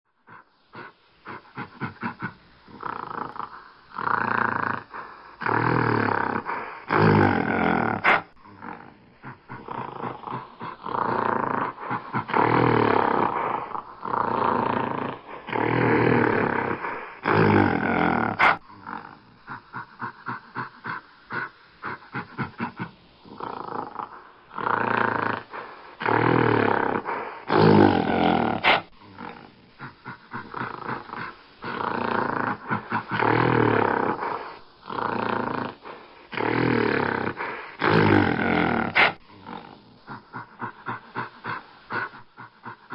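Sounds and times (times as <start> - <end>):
gorilla roaring growls: 0.3 - 42.9.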